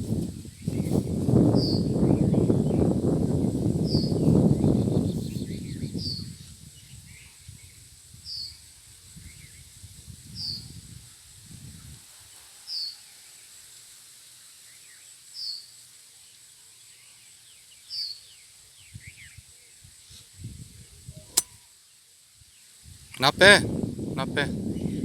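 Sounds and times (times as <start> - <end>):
wind buffeting microphone: 0.0 - 8.4, 22.9 - 25.0.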